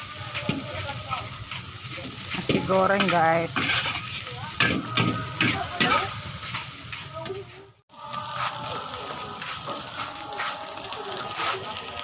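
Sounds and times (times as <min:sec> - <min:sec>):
metal spatula scraping a wok: 0:00.0 - 0:07.7
food sizzling: 0:00.0 - 0:12.0.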